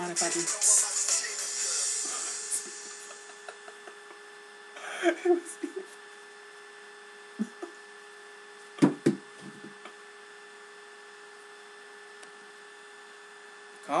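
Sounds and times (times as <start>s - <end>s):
steady electrical hum: 0.0s - 14.0s
knocks near microphone: 8.8s - 9.8s.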